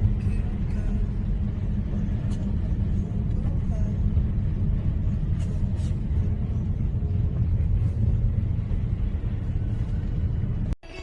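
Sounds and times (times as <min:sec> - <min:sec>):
car cabin road and engine rumble: 0:00.0 - 0:11.0.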